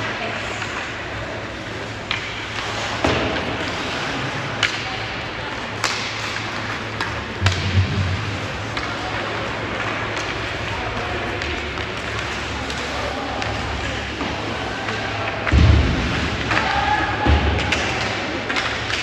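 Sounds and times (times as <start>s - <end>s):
arena noise: 0.0s - 19.0s
hockey sticks and puck clacking: 0.0s - 19.0s
low hum: 1.8s - 16.4s.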